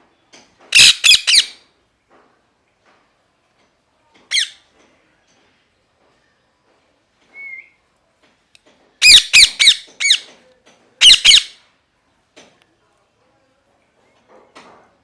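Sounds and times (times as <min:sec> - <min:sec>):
parrot squawking: 0:00.7 - 0:01.6, 0:04.3 - 0:04.6, 0:09.0 - 0:10.3, 0:11.0 - 0:11.6
faint short whistle: 0:07.3 - 0:07.8.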